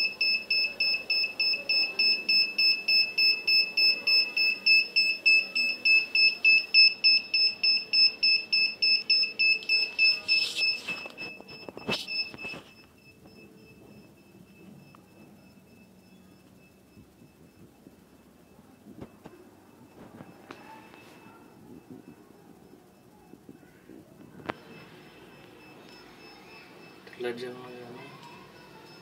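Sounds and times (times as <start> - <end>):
electronic buzzer beeping rapidly: 0.0 - 18.4.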